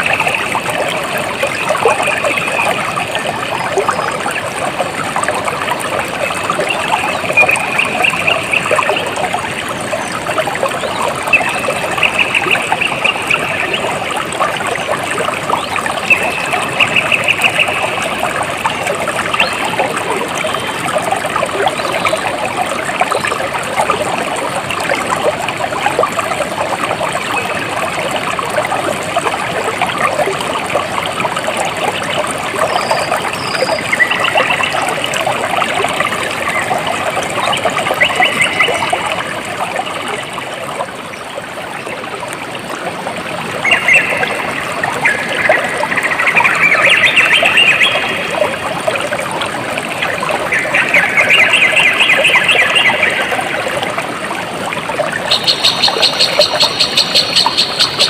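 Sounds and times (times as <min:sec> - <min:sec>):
water trickling and babbling: 0:00.0 - 0:58.0.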